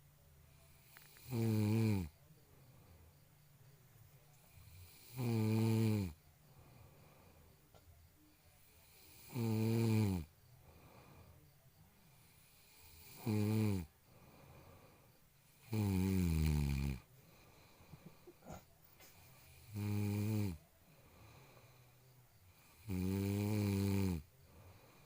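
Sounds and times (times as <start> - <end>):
person snoring loudly: 0.9 - 2.2, 4.6 - 6.2, 8.8 - 10.3, 12.3 - 13.9, 15.6 - 17.1, 19.5 - 20.6, 22.6 - 24.3.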